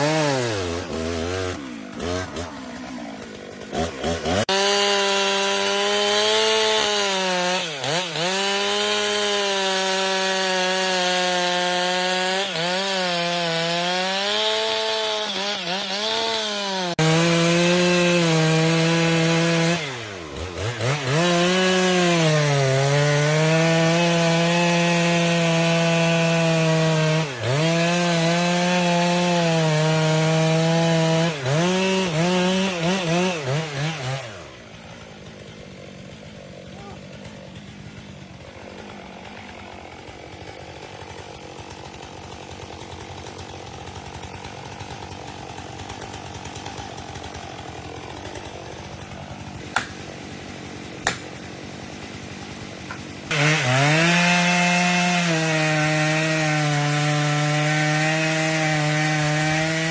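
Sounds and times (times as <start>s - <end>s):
chainsaw cutting into wood: 0.0s - 59.9s.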